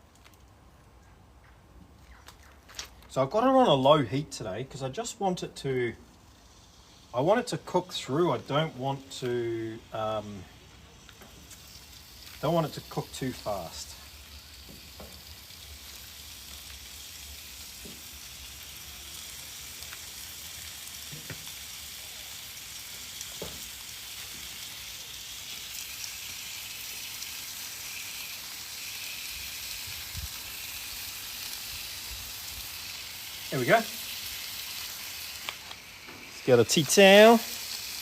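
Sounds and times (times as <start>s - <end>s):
meat sizzling on a barbecue: 2.2s - 38.0s.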